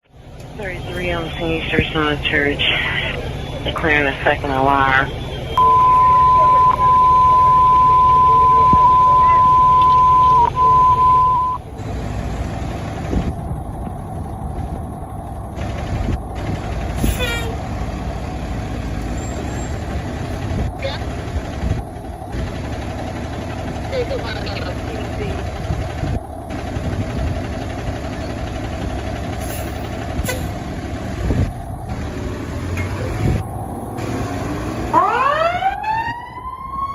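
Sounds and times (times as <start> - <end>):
truck engine rumble: 0.0 - 36.9
high-pitched alert tone: 5.6 - 11.6.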